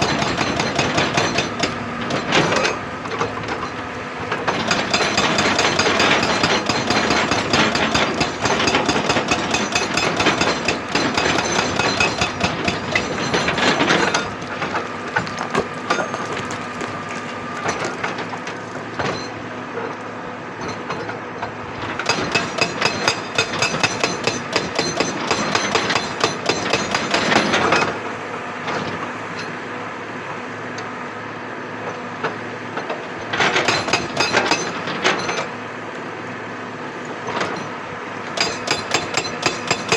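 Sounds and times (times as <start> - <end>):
hydraulic rock breaker hammering: 0.0 - 19.3, 21.9 - 28.0, 33.4 - 35.6, 38.3 - 39.9.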